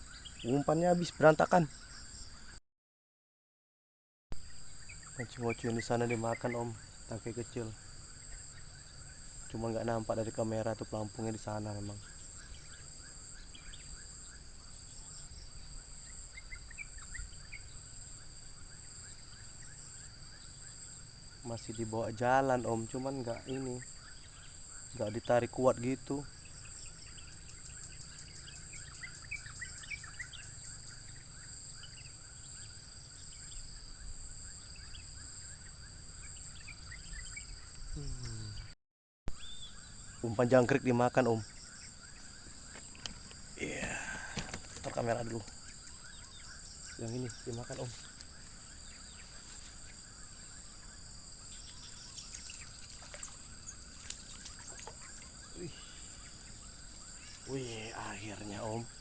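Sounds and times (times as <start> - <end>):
crickets or cicadas droning: 0.0 - 2.6, 4.4 - 38.8, 39.4 - 59.0
small birds chirping: 0.0 - 2.6, 4.5 - 38.8, 39.4 - 59.0.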